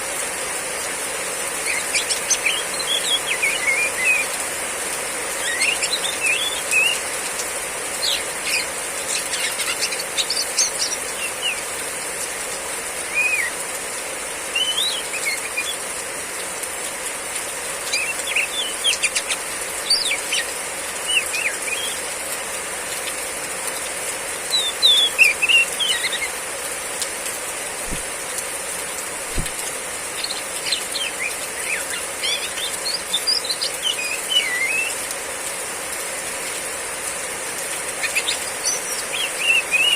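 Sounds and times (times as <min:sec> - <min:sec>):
heavy rain hiss: 0:00.0 - 0:39.9
bird chirping: 0:01.6 - 0:04.4, 0:05.4 - 0:07.1, 0:08.0 - 0:11.7, 0:14.5 - 0:15.8, 0:17.8 - 0:22.0, 0:24.5 - 0:26.4, 0:29.4 - 0:35.0, 0:38.0 - 0:39.9.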